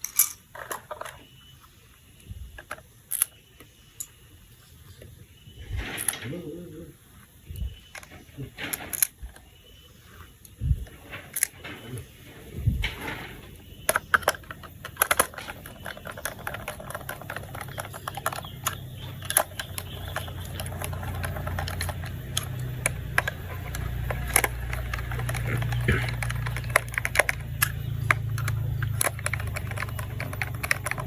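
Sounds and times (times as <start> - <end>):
plastic clicks and rattles: 0.0 - 1.3, 2.2 - 4.2, 6.0 - 6.2, 7.6 - 9.5, 10.4 - 12.0, 12.8 - 31.0
toy battery motor humming: 13.9 - 31.0.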